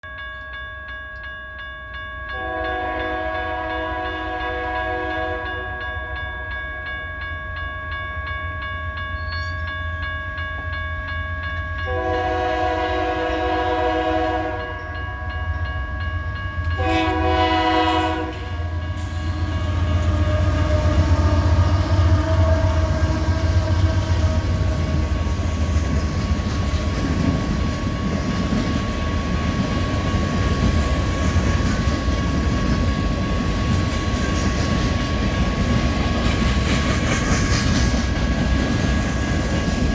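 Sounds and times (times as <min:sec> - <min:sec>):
train horn blasts: 0:02.3 - 0:05.9, 0:11.8 - 0:15.0, 0:16.7 - 0:25.1
wheels clattering on rails: 0:19.1 - 0:39.9.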